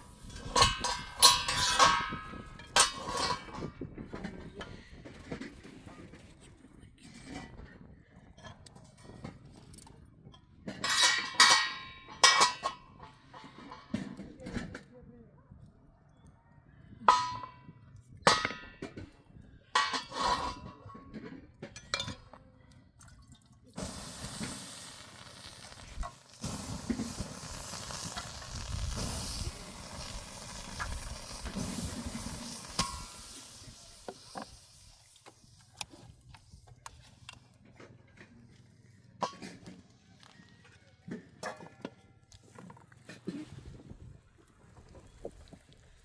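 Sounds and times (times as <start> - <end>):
water pouring and splashing: 23.0 - 36.1, 44.6 - 46.0.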